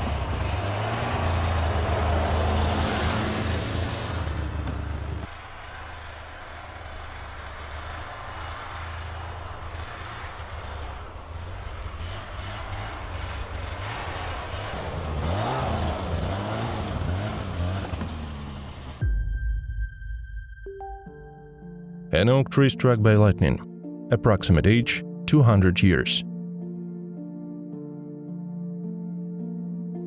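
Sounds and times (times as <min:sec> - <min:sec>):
snowmobile engine running: 0:00.0 - 0:19.0.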